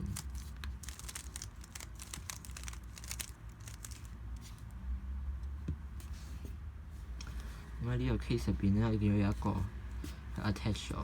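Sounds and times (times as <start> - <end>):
puzzle cube clicking turns: 0.0 - 4.1.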